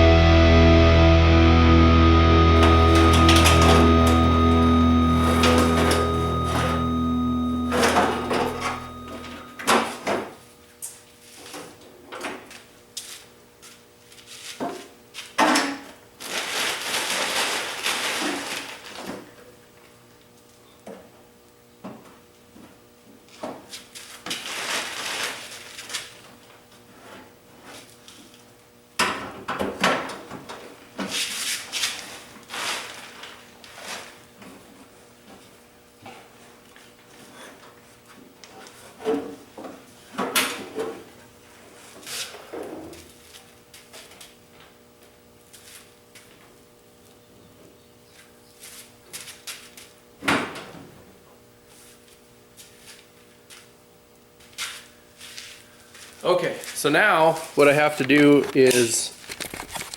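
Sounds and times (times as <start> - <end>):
background music: 0.0 - 9.6.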